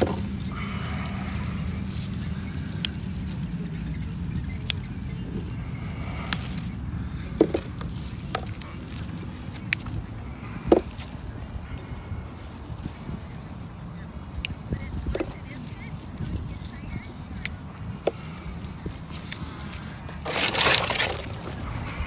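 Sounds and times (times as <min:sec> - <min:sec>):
strawberry stems snapping: 0:02.0 - 0:03.5, 0:04.3 - 0:05.1, 0:07.6 - 0:10.0, 0:17.4 - 0:17.6.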